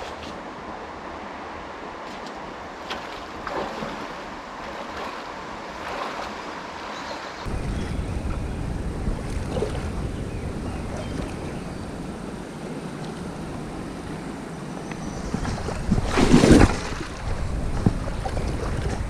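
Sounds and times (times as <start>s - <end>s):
spillway water rushing: 0.0s - 19.0s
wind buffeting microphone: 7.4s - 19.0s.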